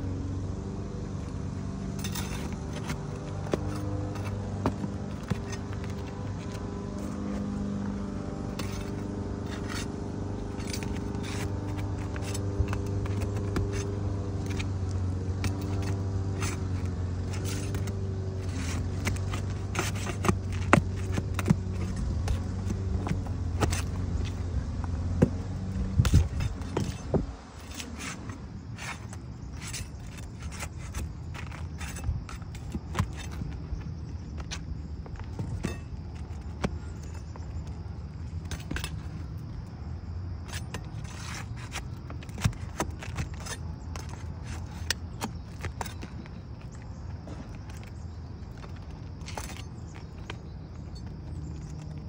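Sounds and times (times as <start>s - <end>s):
steady engine hum: 0.0s - 52.0s
metal bar scraping shingles: 1.8s - 39.6s, 40.4s - 46.5s.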